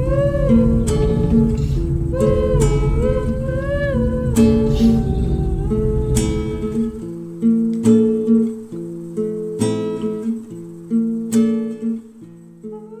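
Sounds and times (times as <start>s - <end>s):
acoustic guitar strumming chords: 0.0s - 13.0s.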